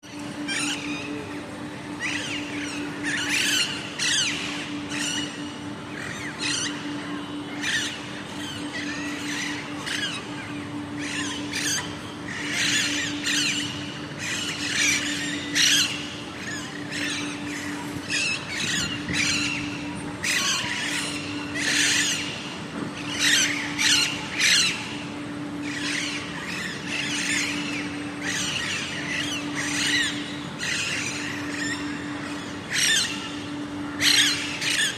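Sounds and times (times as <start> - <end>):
steady low hum: 0.0 - 34.9
parrots squawking: 2.0 - 5.4, 11.0 - 22.3, 23.0 - 25.0, 25.6 - 34.9.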